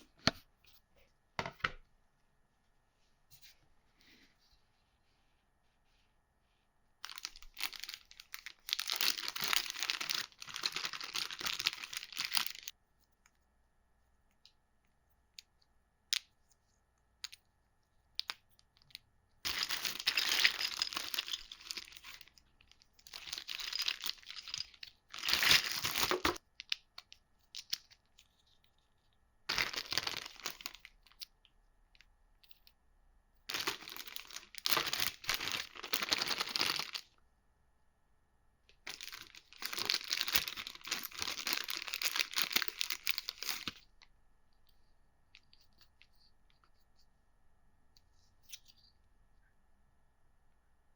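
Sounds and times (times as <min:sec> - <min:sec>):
packaging crinkling and tearing: 0:07.1 - 0:12.7, 0:19.5 - 0:22.2, 0:23.1 - 0:26.4, 0:29.5 - 0:30.9, 0:33.5 - 0:37.0, 0:38.9 - 0:43.8.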